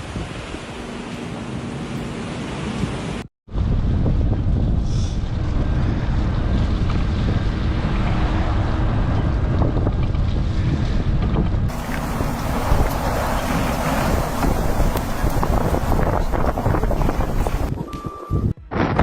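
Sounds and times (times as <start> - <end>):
wind buffeting microphone: 2.6 - 17.8.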